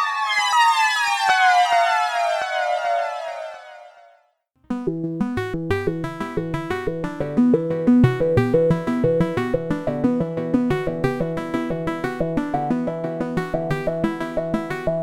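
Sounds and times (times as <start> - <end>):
sequenced synthesizer notes: 4.6 - 15.0.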